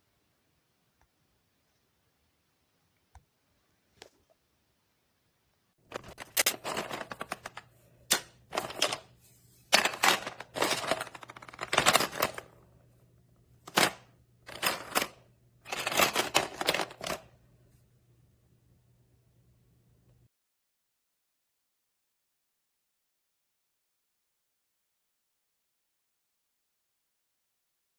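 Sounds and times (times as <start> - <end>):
plastic parts clicking and rattling: 5.9 - 12.7, 13.6 - 17.3.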